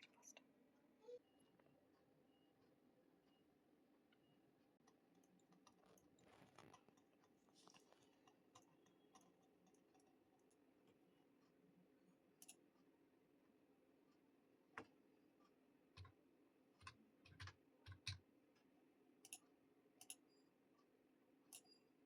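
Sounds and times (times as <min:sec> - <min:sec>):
computer mouse and keyboard clicks: 0:16.8 - 0:18.2, 0:19.2 - 0:19.4, 0:20.0 - 0:20.4.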